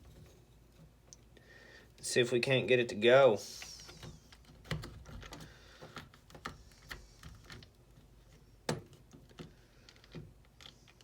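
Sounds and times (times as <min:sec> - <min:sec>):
plastic parts clicking and knocking: 0:03.7 - 0:11.0.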